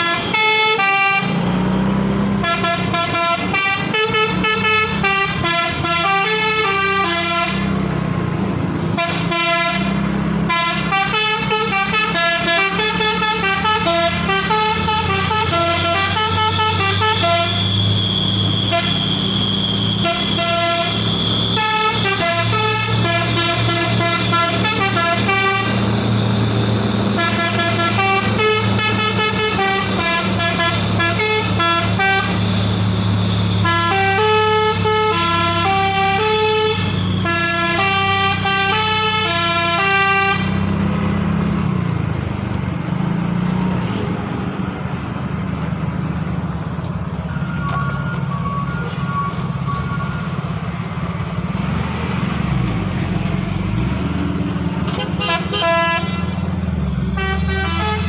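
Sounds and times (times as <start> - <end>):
multi-tone air horn melody: 0.0 - 1.4, 2.4 - 7.8, 8.9 - 40.8, 54.8 - 58.0
diesel engine running: 0.0 - 58.0.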